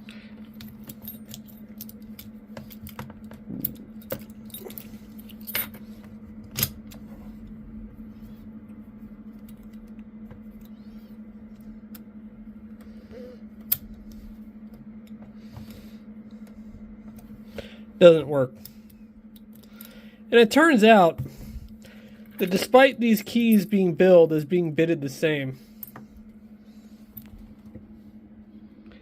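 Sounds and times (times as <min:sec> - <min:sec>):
steady low hum: 0:00.0 - 0:29.0
keys jangling: 0:00.6 - 0:03.0, 0:03.6 - 0:05.8.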